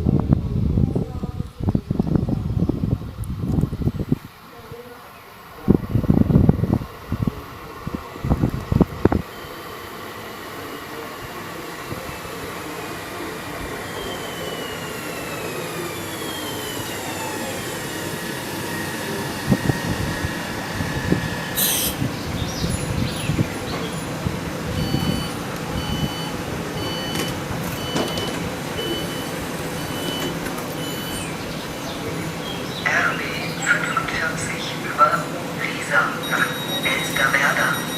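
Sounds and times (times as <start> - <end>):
stationary train rumble: 0.0 - 37.9
train drive whining: 0.0 - 37.9
beeping signal: 9.3 - 10.0, 13.8 - 15.3, 24.7 - 31.4, 36.0 - 37.9
air hiss: 19.6 - 22.1.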